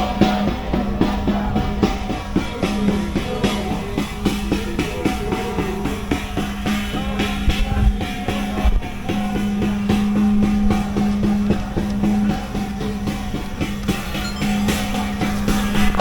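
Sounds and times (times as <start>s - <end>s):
music with quick drumbeat: 0.0s - 16.0s
held low tone: 14.0s - 16.0s.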